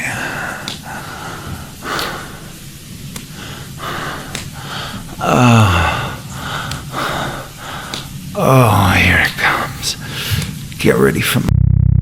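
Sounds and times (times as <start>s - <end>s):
man breathing hard: 0.0s - 10.7s
man groaning: 5.2s - 7.5s, 8.3s - 10.2s.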